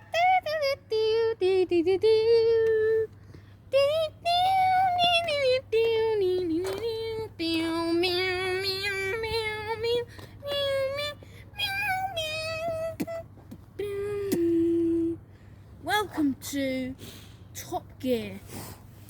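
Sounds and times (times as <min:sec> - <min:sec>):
child singing: 0:00.0 - 0:03.1, 0:03.7 - 0:15.2.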